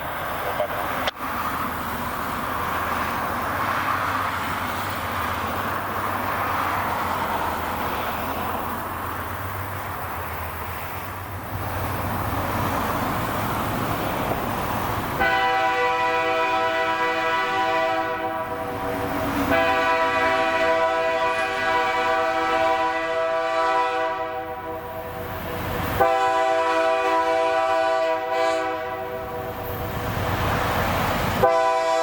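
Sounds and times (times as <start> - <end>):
freight train engine drone and rolling: 0.0 - 32.0
locomotive air horn: 15.2 - 29.7, 31.4 - 32.0.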